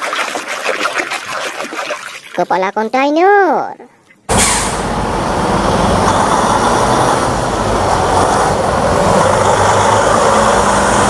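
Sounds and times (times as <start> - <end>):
running water rushing: 0.0 - 2.5.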